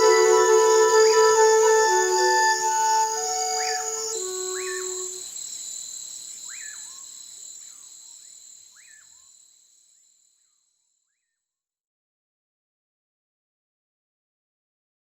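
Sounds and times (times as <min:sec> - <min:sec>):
low flute note: 0:00.0 - 0:05.2
rising and falling chirping call: 0:00.0 - 0:05.2.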